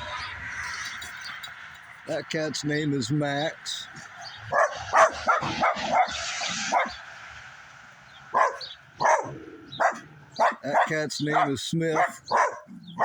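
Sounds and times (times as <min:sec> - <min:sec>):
dog barking: 0:04.5 - 0:07.0, 0:08.3 - 0:13.0.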